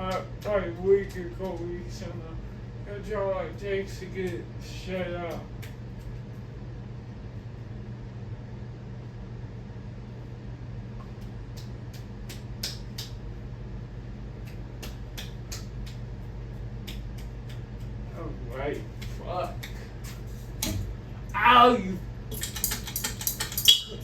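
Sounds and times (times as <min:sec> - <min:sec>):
ceiling fan motor hum: 0:00.0 - 0:24.0
sharp clicks: 0:22.3 - 0:23.9.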